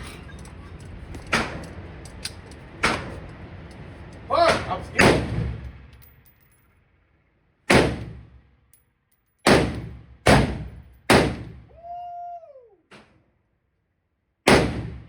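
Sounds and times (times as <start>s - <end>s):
faint gunshot: 7.7s - 8.2s, 9.5s - 11.6s, 14.5s - 15.0s
pistol gunshots with echo: 7.7s - 8.3s, 9.4s - 11.6s, 14.5s - 15.0s.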